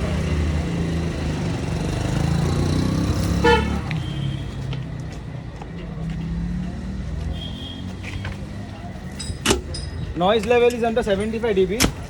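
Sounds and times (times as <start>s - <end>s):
vehicle horn tooting: 3.4s - 4.5s, 7.3s - 8.3s.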